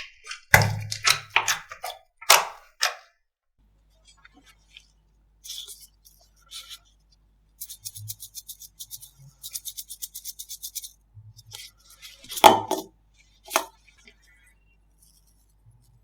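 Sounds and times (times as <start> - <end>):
slime squelch: 0.0 - 2.9.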